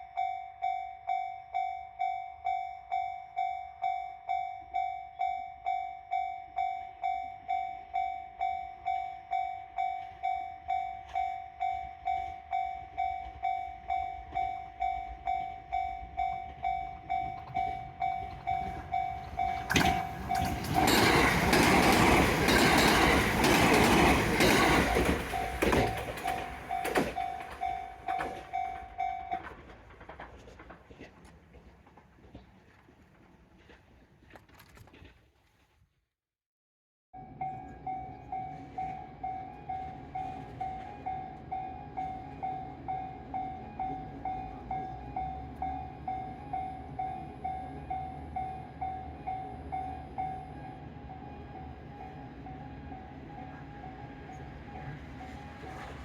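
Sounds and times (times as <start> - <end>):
railroad crossing alarm ringing: 0.0 - 30.8, 37.2 - 56.0
train passing: 0.0 - 34.2, 37.2 - 56.0
wheels clacking over rail joints: 12.0 - 35.0, 52.8 - 56.0.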